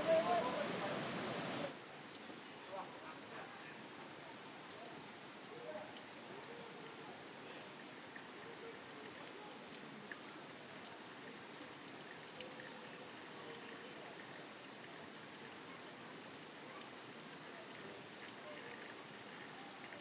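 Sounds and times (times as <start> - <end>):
waterfall rushing: 0.0 - 1.8
water splashes and drips: 0.0 - 20.0.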